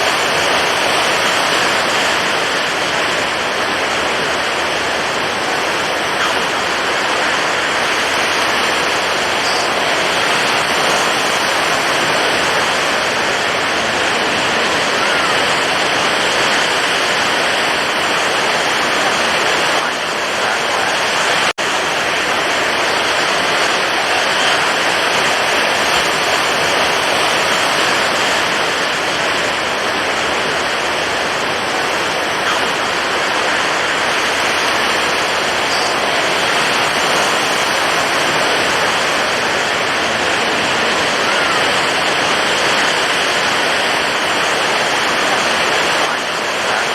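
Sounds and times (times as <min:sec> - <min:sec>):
ocean waves breaking: 0:00.0 - 0:46.9.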